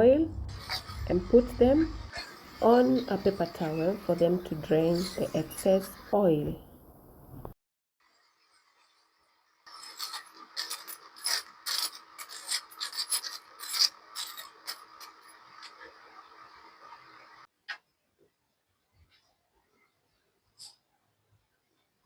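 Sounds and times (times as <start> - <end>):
utensil scraping a pan: 0.5 - 6.1.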